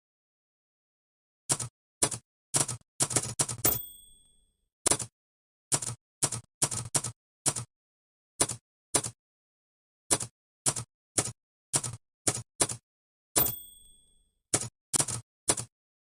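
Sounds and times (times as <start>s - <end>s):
typewriter keys striking: 1.5s - 3.8s, 5.7s - 7.7s, 10.1s - 12.8s, 13.4s - 13.8s, 14.6s - 15.7s.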